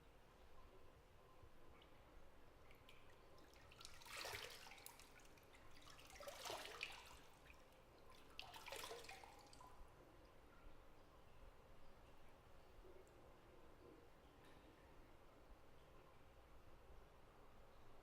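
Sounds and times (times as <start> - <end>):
faint steady hiss: 0.0 - 18.0
bath water splashing and dripping: 2.6 - 9.6.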